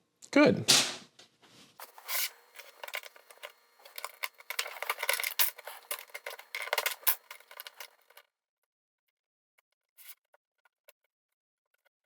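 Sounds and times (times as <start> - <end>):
plastic bricks clicking and rattling: 1.8 - 8.2.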